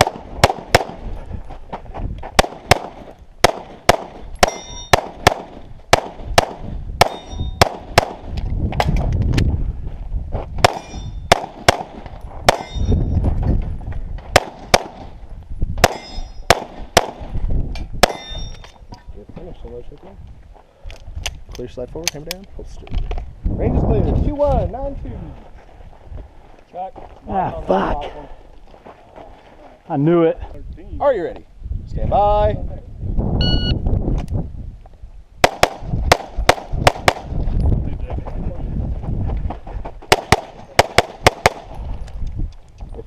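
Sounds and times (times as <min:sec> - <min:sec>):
pistol shots: 0:00.0 - 0:01.0, 0:02.4 - 0:08.3, 0:10.6 - 0:12.8, 0:14.3 - 0:15.1, 0:15.8 - 0:17.3, 0:18.0 - 0:18.4, 0:35.4 - 0:37.3, 0:40.1 - 0:41.7
steel targets ringing: 0:04.4 - 0:05.0, 0:07.1 - 0:07.6, 0:12.6 - 0:13.1, 0:15.9 - 0:16.5, 0:18.1 - 0:18.7.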